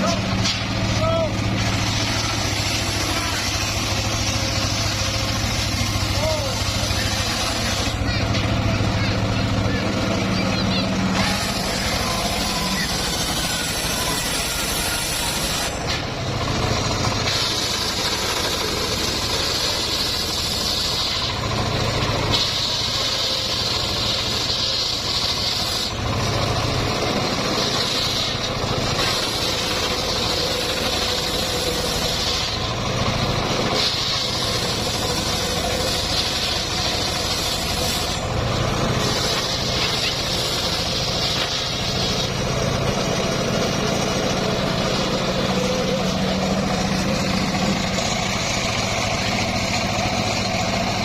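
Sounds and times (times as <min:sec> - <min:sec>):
circular sawmill running: 0:00.0 - 0:51.0
saw blade whine cutting wood: 0:00.0 - 0:51.0.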